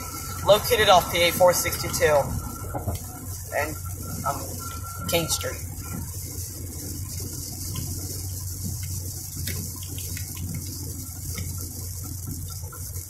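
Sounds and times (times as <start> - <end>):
low road drone: 0.0 - 13.0
rain and tyre spray hissing: 0.0 - 13.0.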